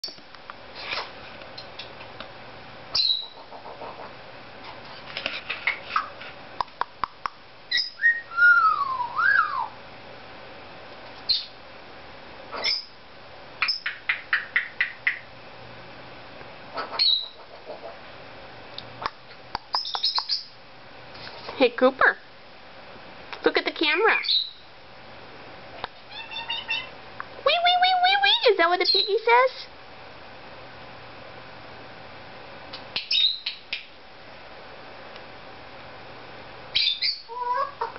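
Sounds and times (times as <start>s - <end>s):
parrot squeaks: 2.9s - 3.4s, 7.7s - 9.6s, 11.3s - 11.5s, 12.6s - 12.9s, 16.8s - 17.4s, 24.2s - 24.6s, 26.1s - 26.9s, 28.8s - 29.2s, 33.1s - 33.5s, 36.7s - 37.9s
parrot gliding whistle: 3.0s - 3.4s, 7.7s - 9.8s.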